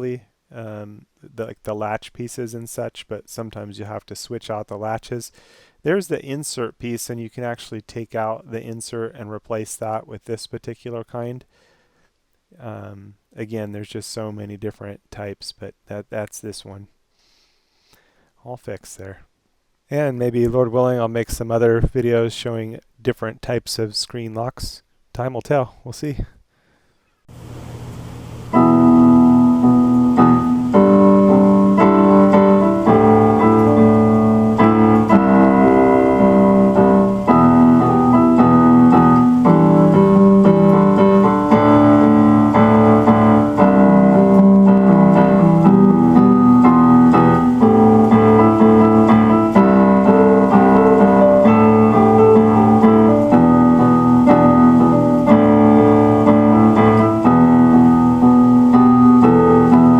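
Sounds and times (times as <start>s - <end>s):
electric piano chords: 27.5s - 59.9s.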